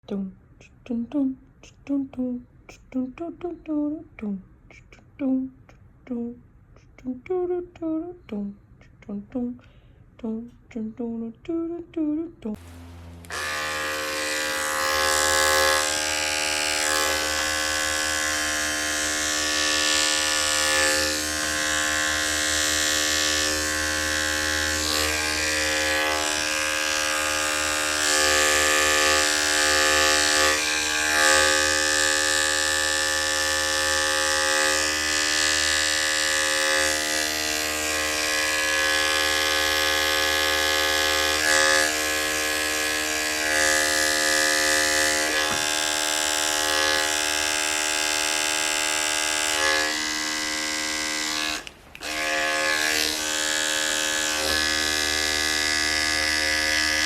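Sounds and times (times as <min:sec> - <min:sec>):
electric clippers buzzing: 0:12.6 - 0:57.0.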